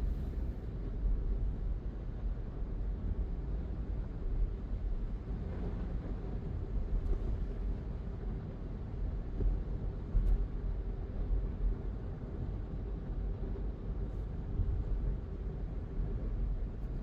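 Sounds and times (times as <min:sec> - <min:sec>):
faint steady hum: 0:00.0 - 0:01.7
car road and engine rumble: 0:00.0 - 0:17.0.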